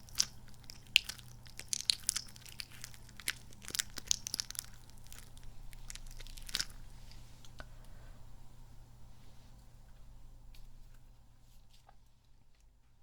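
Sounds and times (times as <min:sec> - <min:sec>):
squishy toy squelching: 0:00.0 - 0:07.2.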